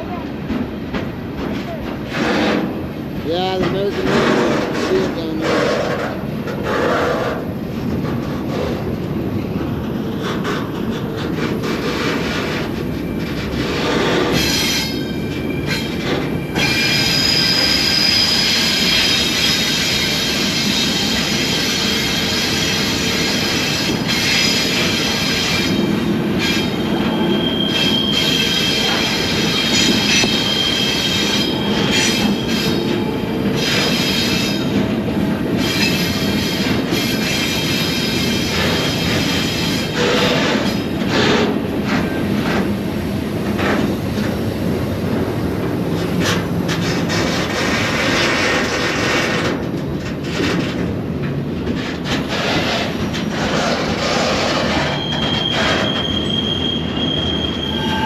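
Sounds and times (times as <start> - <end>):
train wheels rumbling on rail: 0.0 - 58.0
high ringing wheel squeal: 14.0 - 34.6, 54.7 - 58.0.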